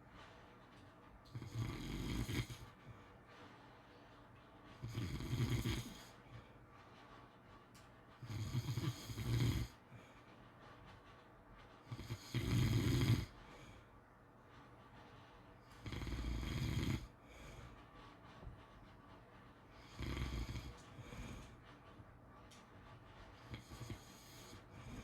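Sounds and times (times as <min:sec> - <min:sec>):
dog snoring: 0:01.3 - 0:03.0, 0:04.8 - 0:06.3, 0:08.2 - 0:10.0, 0:11.9 - 0:13.8, 0:15.7 - 0:17.6, 0:19.8 - 0:21.6, 0:23.4 - 0:25.0.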